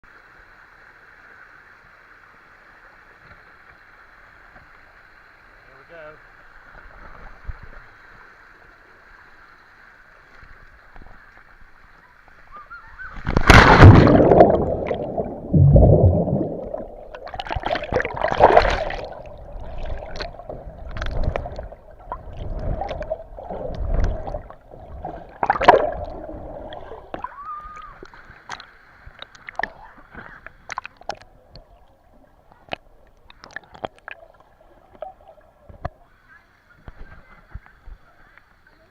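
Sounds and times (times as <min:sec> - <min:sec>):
faint steady hiss: 0:00.1 - 0:38.9
water dripping: 0:13.0 - 0:29.7
water sloshing and splashing: 0:13.0 - 0:31.4.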